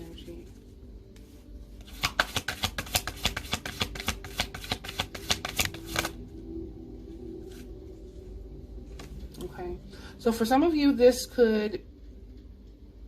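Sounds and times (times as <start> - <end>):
cards being shuffled: 0.6 - 6.2.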